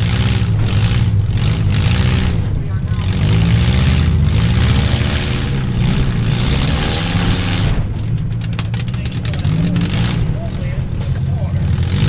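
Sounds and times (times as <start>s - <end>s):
car engines revving: 0.0s - 12.0s
sharp clicks and knocks: 7.6s - 10.3s.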